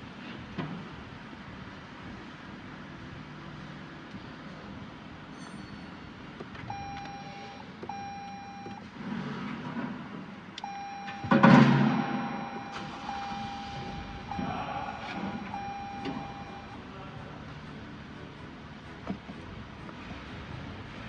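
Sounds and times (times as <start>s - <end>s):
low steady hum: 6.6s - 9.1s, 10.5s - 21.0s
electronic beeping: 6.7s - 8.8s, 10.6s - 16.8s
loud burst of sound: 11.2s - 16.8s.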